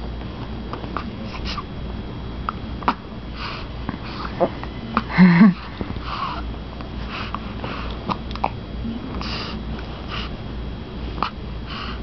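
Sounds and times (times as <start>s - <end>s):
baby breathing and sniffling: 9.2s - 10.4s.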